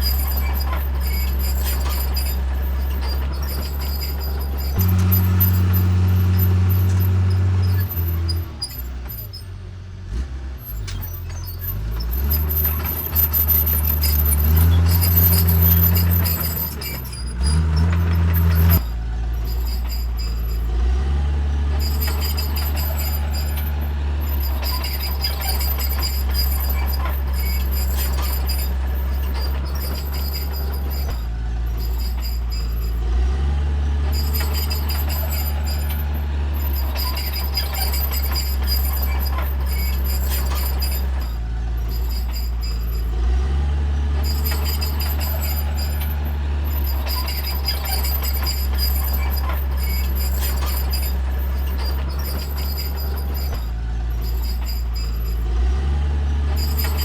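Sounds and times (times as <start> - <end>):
light metallic clatter: 0.0 - 9.6, 10.6 - 57.0
diesel earthmoving machinery running: 0.0 - 57.0.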